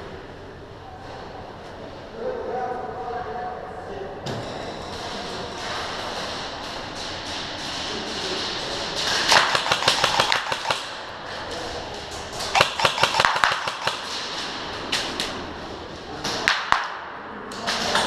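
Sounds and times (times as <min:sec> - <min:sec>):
airsoft guns firing bursts: 0:06.0 - 0:11.1, 0:12.0 - 0:15.2.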